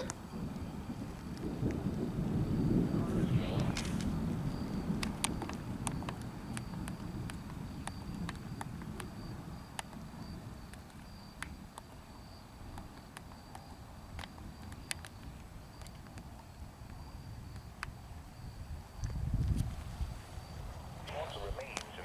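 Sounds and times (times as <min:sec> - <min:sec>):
low rumble of wind: 0:00.0 - 0:22.0
faint high whine: 0:02.4 - 0:05.0, 0:20.4 - 0:22.0.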